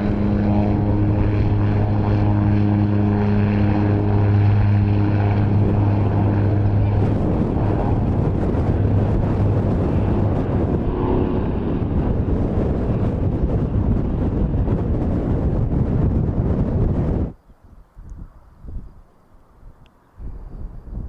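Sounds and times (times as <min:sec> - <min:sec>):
propeller plane engine droning: 0:00.0 - 0:21.0
wind buffeting microphone: 0:00.0 - 0:21.0.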